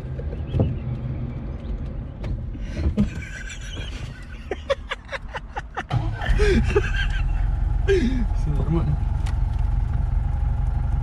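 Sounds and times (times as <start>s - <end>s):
person laughing in short bursts: 3.2s - 8.3s.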